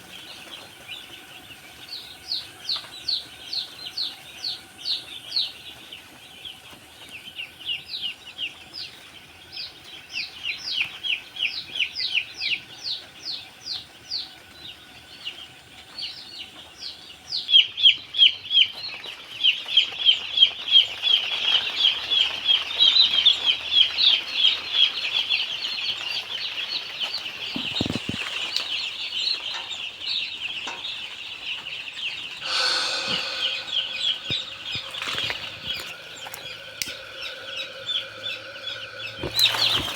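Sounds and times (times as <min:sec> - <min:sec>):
chicks peeping: 0:00.0 - 0:39.9.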